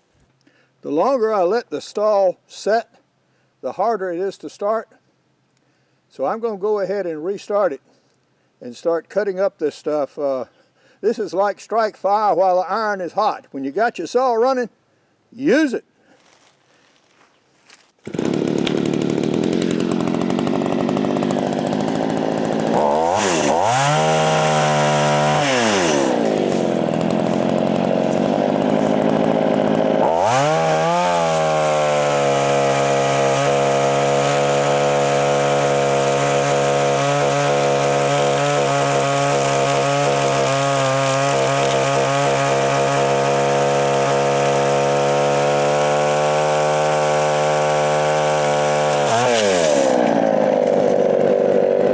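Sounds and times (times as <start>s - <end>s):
chainsaw revving and cutting: 18.0s - 51.9s.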